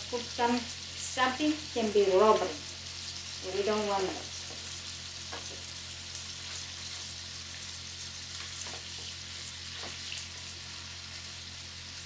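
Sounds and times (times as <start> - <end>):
scampi sizzling in hot oil: 0.0 - 12.0.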